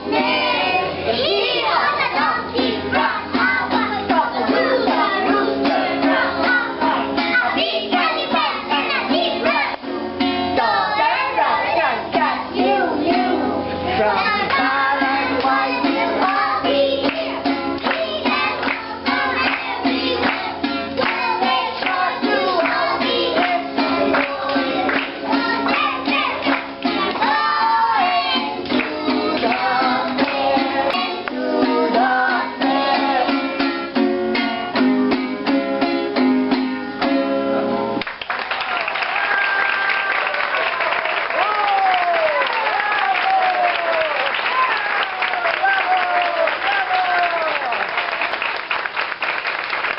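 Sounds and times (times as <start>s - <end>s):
children singing: 0.0s - 33.8s
music: 0.0s - 38.1s
audience applauding: 38.0s - 49.9s.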